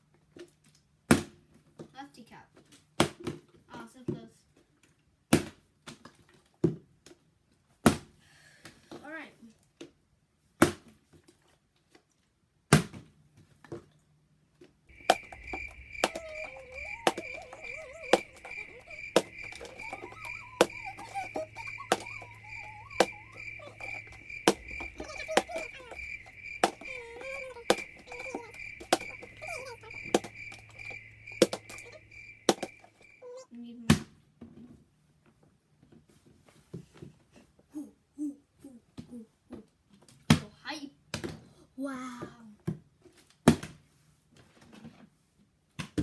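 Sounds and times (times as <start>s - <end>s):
crickets chirping: 14.9s - 33.4s.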